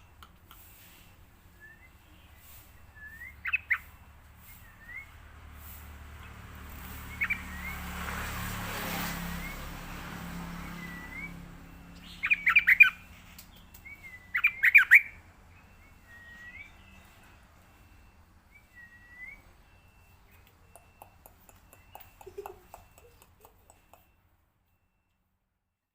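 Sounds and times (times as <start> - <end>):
bird chattering chirps: 2.0 - 5.0, 6.2 - 7.8, 11.9 - 15.2, 20.3 - 24.0
bird calling soft rising notes: 9.1 - 23.8.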